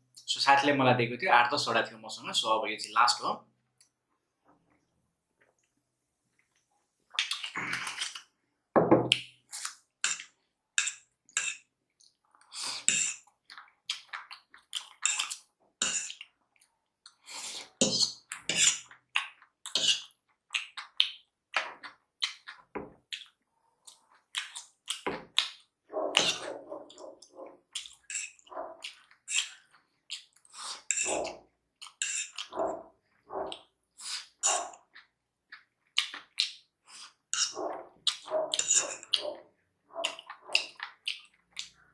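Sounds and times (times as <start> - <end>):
person chewing and slurping: 6.4 - 8.4, 9.1 - 41.9.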